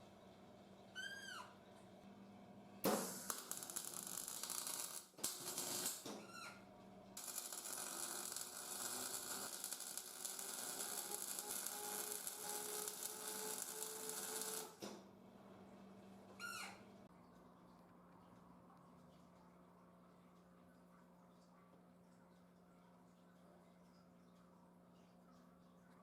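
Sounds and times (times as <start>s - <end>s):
welding arc crackling: 2.9s - 6.1s, 7.2s - 14.8s.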